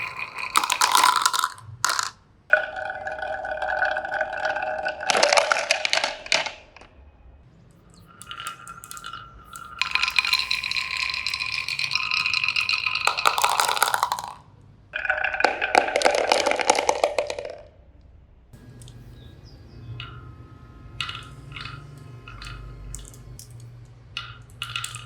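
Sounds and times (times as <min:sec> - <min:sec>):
marbles rolling and clattering: 0:00.0 - 0:06.9, 0:07.9 - 0:17.8, 0:21.0 - 0:25.0.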